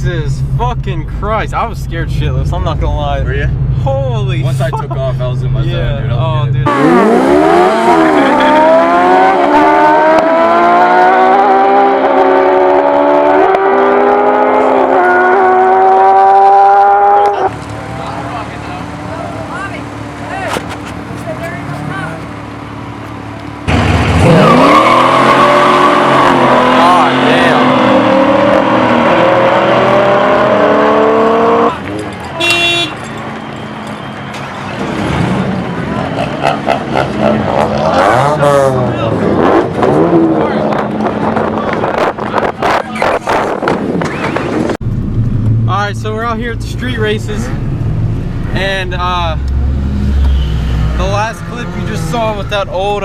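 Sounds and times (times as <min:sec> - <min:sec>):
car engine accelerating hard: 0:05.4 - 0:45.7
car horn toot: 0:32.2 - 0:34.7, 0:50.2 - 0:51.8.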